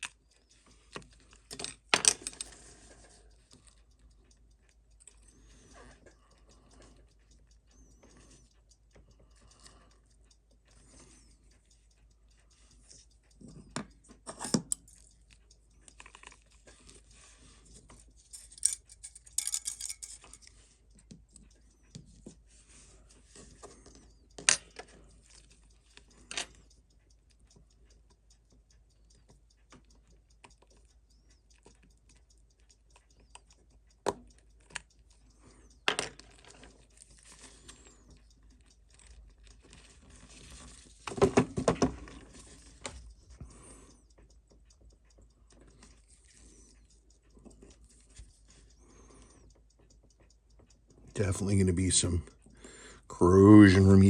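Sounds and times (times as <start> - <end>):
small metallic tool clicks: 13.3 - 16.5, 18.2 - 20.5.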